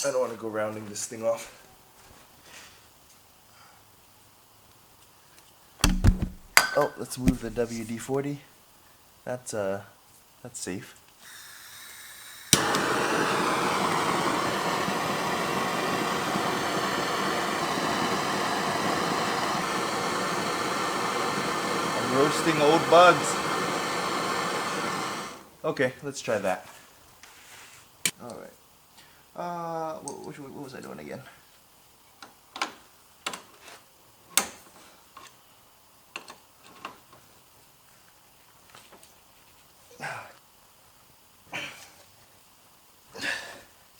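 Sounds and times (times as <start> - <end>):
gas torch hissing: 5.8 - 6.6, 7.2 - 8.2, 11.2 - 25.5
torch igniter click: 5.8 - 6.6, 7.2 - 8.0, 12.4 - 25.4.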